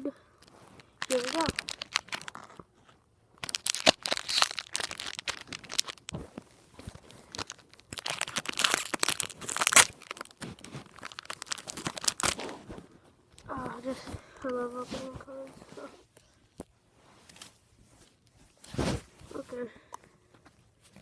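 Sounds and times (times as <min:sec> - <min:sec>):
foil pack crinkling and tearing: 0:00.8 - 0:02.6, 0:03.4 - 0:06.2, 0:06.8 - 0:12.6.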